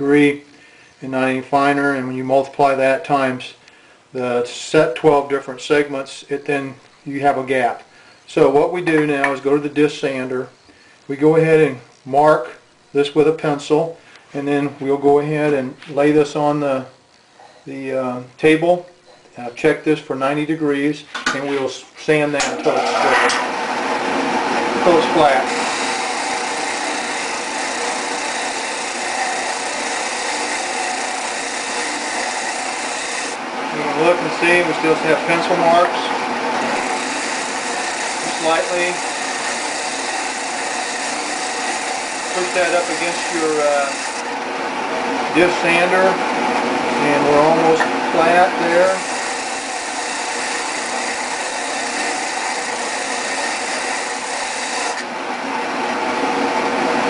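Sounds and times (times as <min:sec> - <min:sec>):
sander motor hum: 0:22.6 - 0:45.8, 0:46.5 - 0:57.0
disc sander sanding wood: 0:22.7 - 0:44.4, 0:47.2 - 0:55.1.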